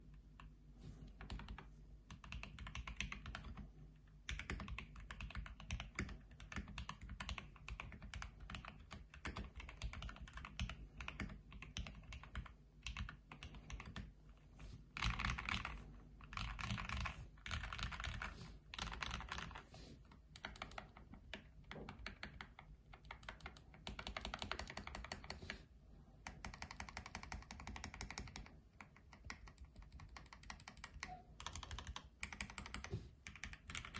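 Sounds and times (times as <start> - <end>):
fast keyboard typing clicks: 1.2 - 14.1, 15.0 - 19.6, 20.3 - 25.4, 26.3 - 33.9.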